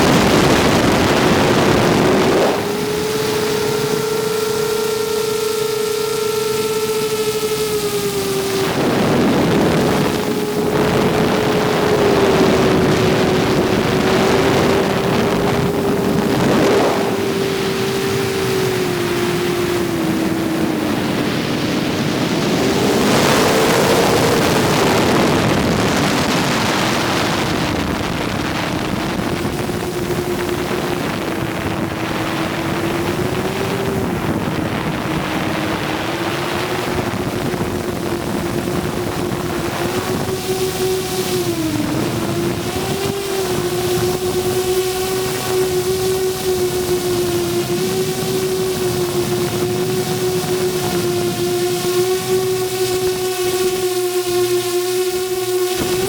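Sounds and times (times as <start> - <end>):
drone motors whining: 0.0 - 56.0
wind rushing over microphone: 0.0 - 56.0.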